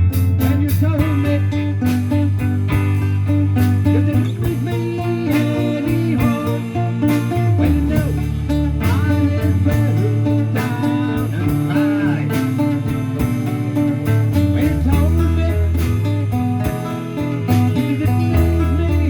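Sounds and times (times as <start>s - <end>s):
band playing a song: 0.0s - 19.0s
bass line: 0.0s - 19.0s
guitar: 0.0s - 19.0s.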